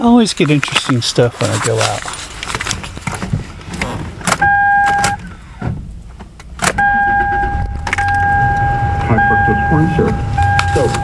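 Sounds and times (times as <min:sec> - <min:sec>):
low rumble of car: 0:02.8 - 0:11.0
car electronic warning tone: 0:04.4 - 0:05.2, 0:06.8 - 0:11.0.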